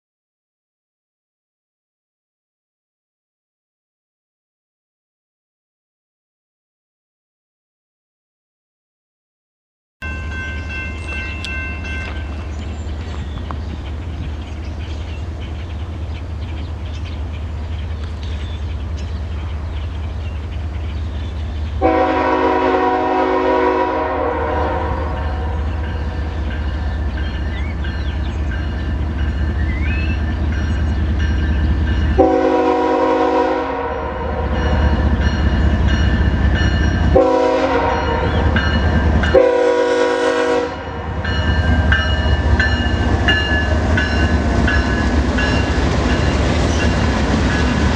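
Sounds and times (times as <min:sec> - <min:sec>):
diesel engines rumbling: 0:10.6 - 0:47.9
locomotive air horn: 0:21.8 - 0:26.2, 0:32.2 - 0:34.9, 0:37.1 - 0:38.6, 0:39.3 - 0:41.3.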